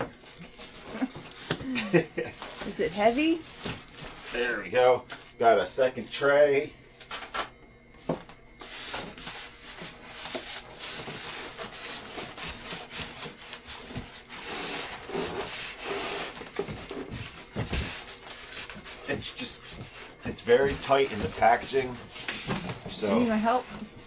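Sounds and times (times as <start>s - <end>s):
styrofoam and cardboard scraping: 0.0s - 5.3s, 8.6s - 24.0s.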